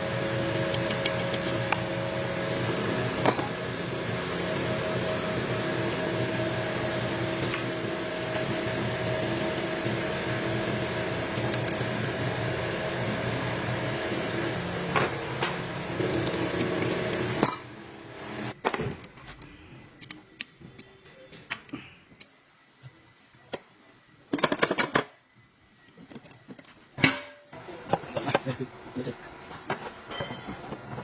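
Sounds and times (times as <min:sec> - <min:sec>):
machine humming: 0:00.0 - 0:18.6.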